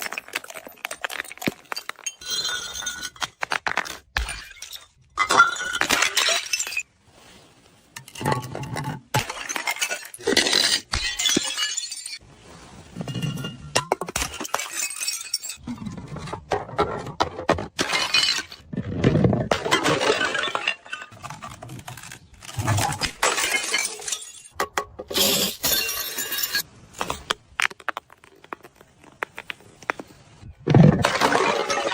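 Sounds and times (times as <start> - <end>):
glass bottles shattering: 0.0 - 3.4, 4.2 - 6.9, 8.0 - 12.2, 12.9 - 15.6, 17.8 - 18.6, 19.5 - 21.6, 22.2 - 26.7, 30.8 - 31.9
glass shards crunching and clinking: 0.0 - 3.4, 4.2 - 6.9, 9.3 - 12.2, 13.1 - 15.6, 19.7 - 24.6, 25.2 - 26.7.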